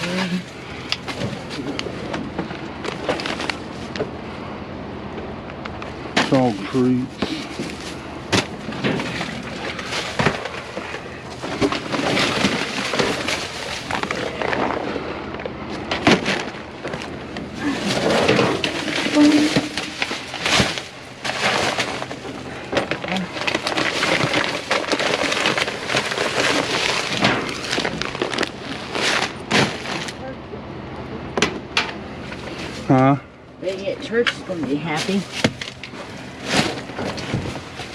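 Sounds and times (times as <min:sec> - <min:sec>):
plastic bags crinkling: 0:02.8 - 0:03.9, 0:06.3 - 0:14.8, 0:16.1 - 0:30.2, 0:34.9 - 0:37.9
knocks and clatter of items: 0:07.2 - 0:14.9, 0:15.8 - 0:30.2, 0:34.2 - 0:37.9.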